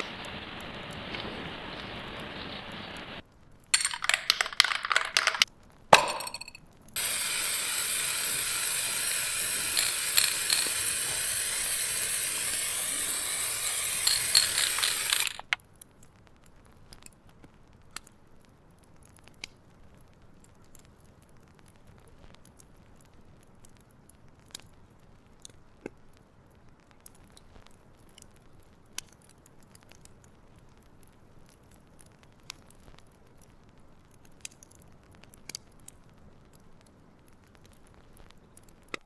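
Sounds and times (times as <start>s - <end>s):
aerosol spray hiss: 0.0s - 3.2s, 7.0s - 15.4s
spray can ball clattering: 3.8s - 5.4s, 6.0s - 15.6s
faint ticks: 15.8s - 39.0s.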